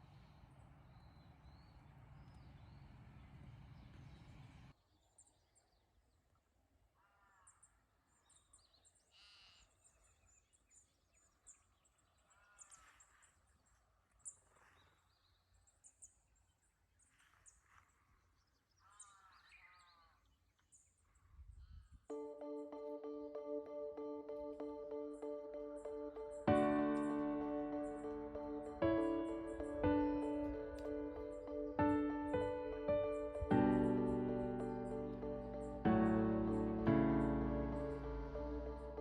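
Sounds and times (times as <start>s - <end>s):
small birds chirping: 0.0s - 6.3s, 7.4s - 39.0s
harsh caw-like bird calls: 7.0s - 7.9s, 12.2s - 13.2s, 18.8s - 20.2s.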